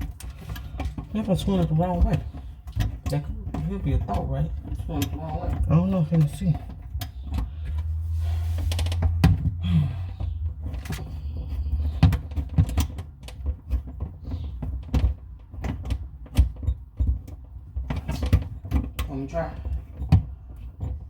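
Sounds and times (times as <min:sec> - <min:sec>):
low rumble: 0:07.3 - 0:12.2.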